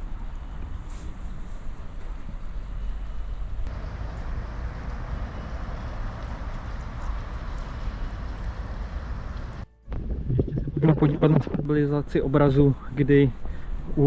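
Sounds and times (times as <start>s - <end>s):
outdoor rumble: 0.0s - 11.0s.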